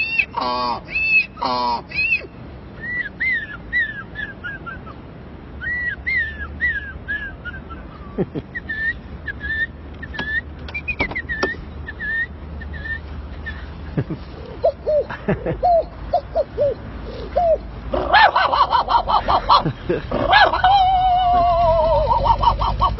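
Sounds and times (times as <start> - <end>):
man whistling birdsong: 0.9 - 5.0, 5.6 - 13.6.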